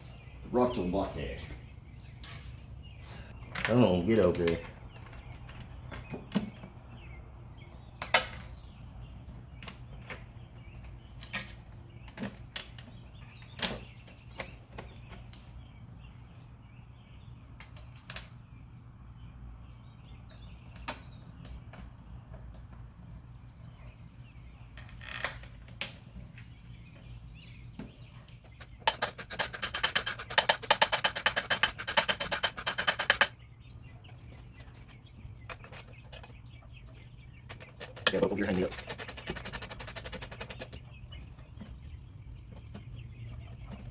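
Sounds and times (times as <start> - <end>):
hand ratchet clicking: 28.6 - 33.3, 37.5 - 40.8
metal parts clinking: 28.6 - 33.3.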